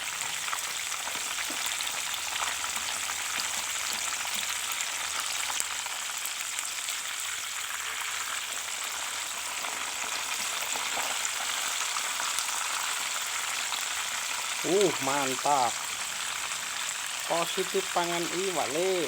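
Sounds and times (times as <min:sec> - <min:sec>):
food sizzling in hot oil: 0:00.0 - 0:19.0
small crackling pops: 0:00.3 - 0:05.7.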